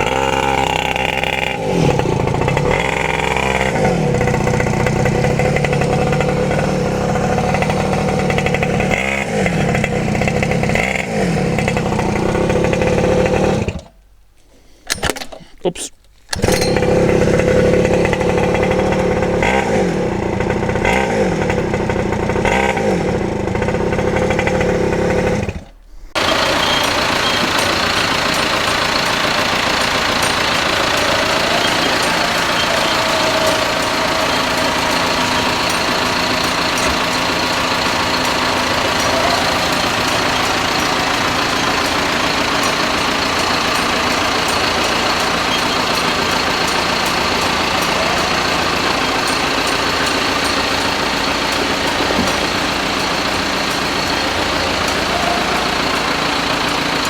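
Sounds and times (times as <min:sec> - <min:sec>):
quad bike engine running: 0:00.0 - 0:14.0, 0:16.3 - 0:57.0
machine running with high whine: 0:26.2 - 0:57.0.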